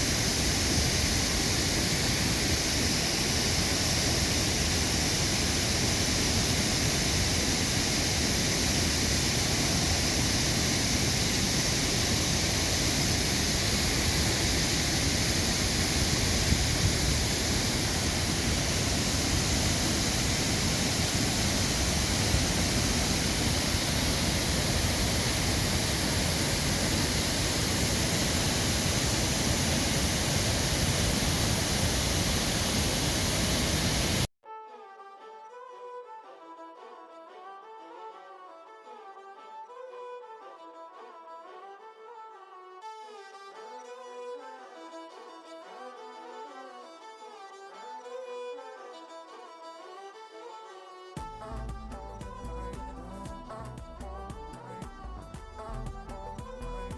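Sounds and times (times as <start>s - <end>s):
waterfall rushing: 0.0s - 34.3s
soft violin music: 34.4s - 56.9s.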